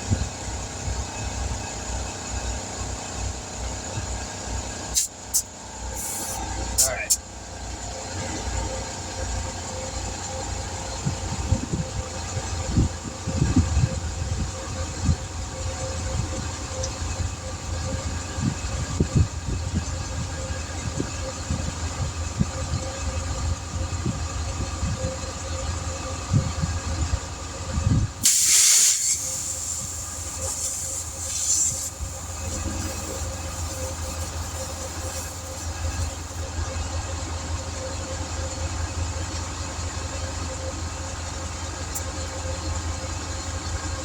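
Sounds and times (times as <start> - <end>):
compressed air hissing: 5.0 - 6.9, 28.2 - 36.4
steady machine hum: 29.2 - 44.0.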